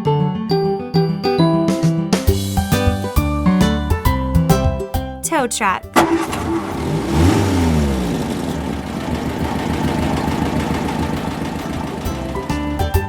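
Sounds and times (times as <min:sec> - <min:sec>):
truck engine revving and running: 0:06.0 - 0:12.9.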